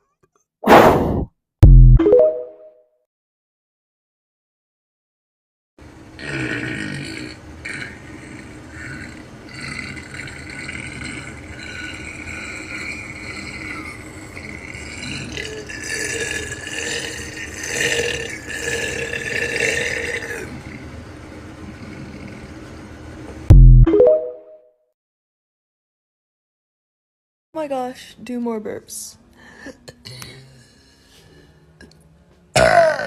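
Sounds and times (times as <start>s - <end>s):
person burping: 6.2s - 20.6s, 32.6s - 33.0s.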